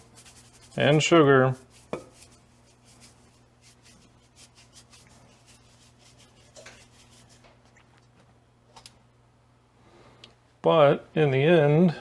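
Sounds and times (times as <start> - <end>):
utensil scraping sugar: 0.0 - 7.4.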